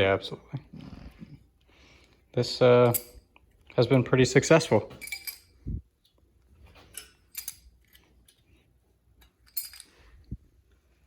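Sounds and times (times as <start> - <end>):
metallic clinks: 2.8 - 3.5, 4.9 - 5.8, 6.9 - 8.4, 9.2 - 10.4.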